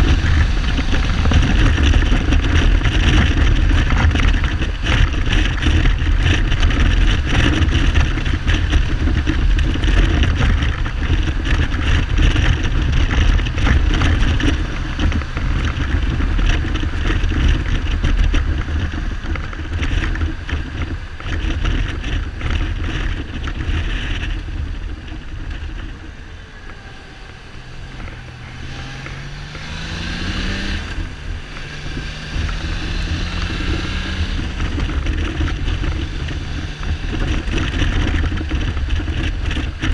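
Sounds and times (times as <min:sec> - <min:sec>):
motorcycle engine accelerating: 0:00.0 - 0:39.9
wind noise on microphone: 0:00.0 - 0:39.9.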